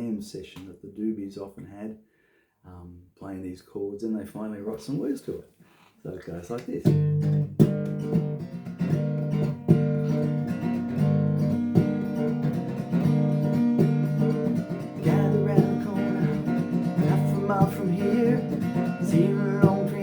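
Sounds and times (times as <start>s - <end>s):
acoustic guitar strumming: 6.9s - 20.0s.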